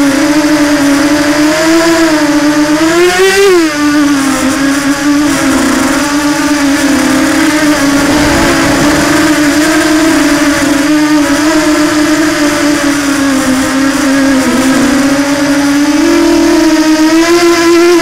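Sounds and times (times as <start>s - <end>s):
electric motor and propeller whine: 5.4s - 10.9s.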